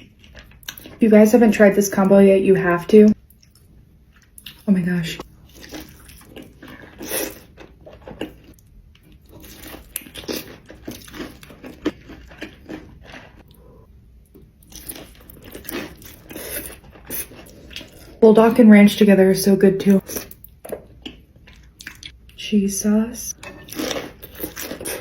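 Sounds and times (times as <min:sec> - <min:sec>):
crunchy bites and chewing: 0:05.4 - 0:13.5, 0:23.6 - 0:25.0.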